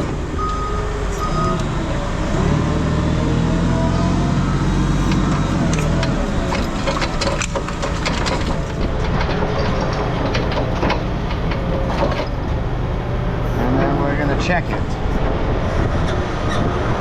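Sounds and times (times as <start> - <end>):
heavy equipment engine running: 0.0 - 17.0
scrap metal clanking and crunching: 5.0 - 12.7.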